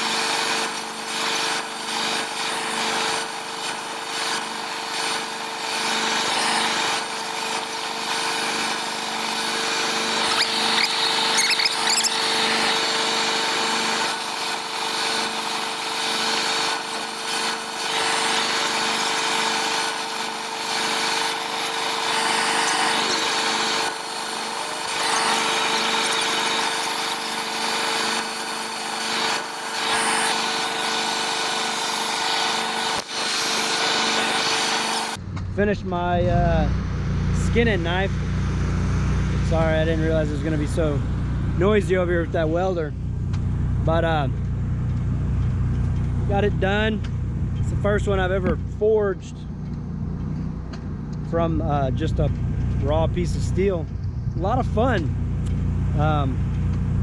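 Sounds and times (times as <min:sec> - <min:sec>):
metalworking machinery noise: 0:00.0 - 0:57.0
constant hum: 0:35.1 - 0:57.0.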